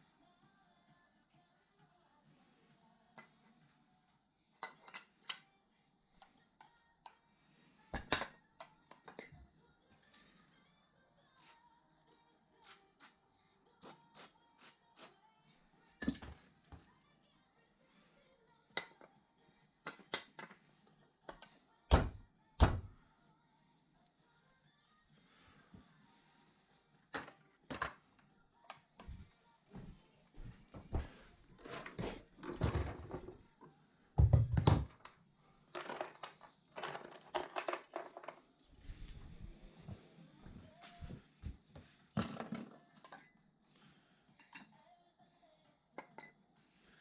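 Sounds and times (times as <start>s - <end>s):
metal parts clinking and knocking: 35.8s - 38.4s, 42.2s - 43.3s.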